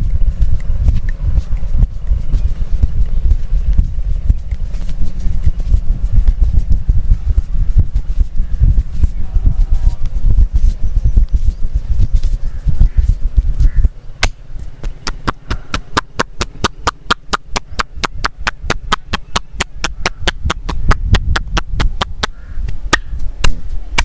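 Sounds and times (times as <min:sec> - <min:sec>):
dull low thumps: 0:00.0 - 0:24.0
hands slapping body: 0:14.2 - 0:24.0.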